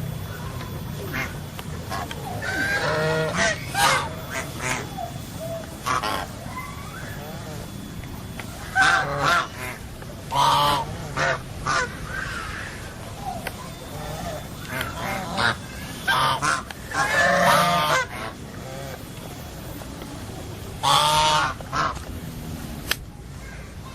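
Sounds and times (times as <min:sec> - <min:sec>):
faint bird calls: 0:00.0 - 0:22.1
geese honking: 0:00.0 - 0:22.9.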